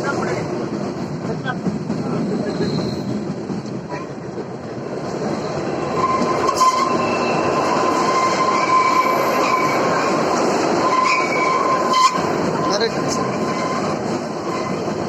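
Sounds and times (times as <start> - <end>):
train wheels rumbling on track: 0.0 - 15.0
high squeal of train wheels: 2.1 - 4.1, 5.2 - 15.0.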